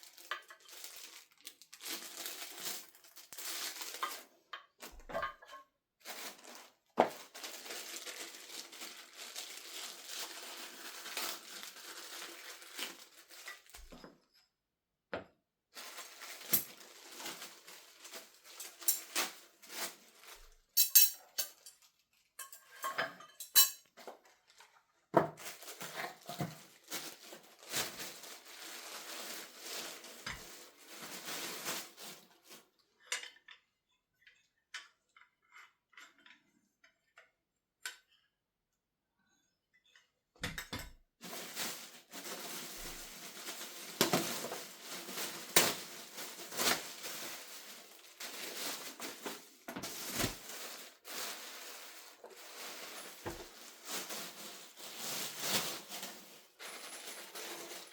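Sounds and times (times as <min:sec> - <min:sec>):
packaging rustling: 0:00.0 - 0:04.3, 0:06.0 - 0:14.0, 0:15.8 - 0:20.6, 0:25.4 - 0:32.7, 0:41.2 - 0:57.9.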